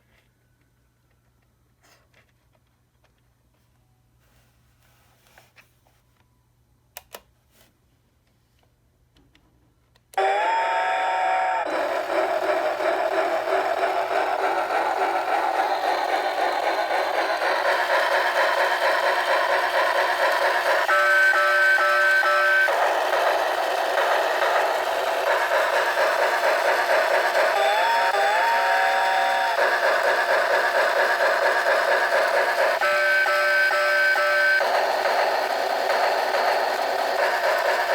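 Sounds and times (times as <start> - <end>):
steam whistle: 10.2 - 30.1
train chugging: 10.2 - 37.9.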